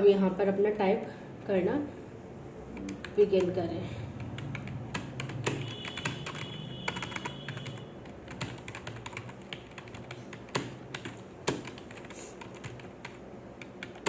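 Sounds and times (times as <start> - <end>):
fast keyboard typing: 2.9 - 14.0.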